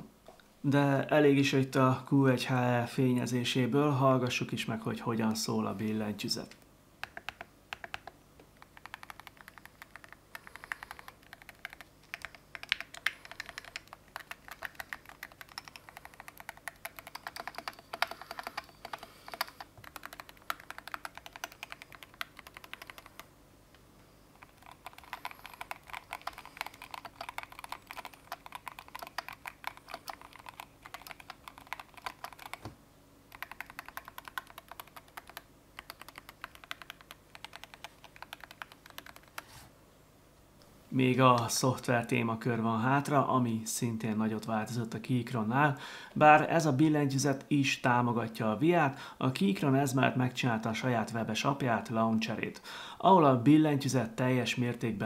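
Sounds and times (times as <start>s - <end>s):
keyboard typing: 7.0s - 23.3s, 24.4s - 32.7s, 33.3s - 39.5s.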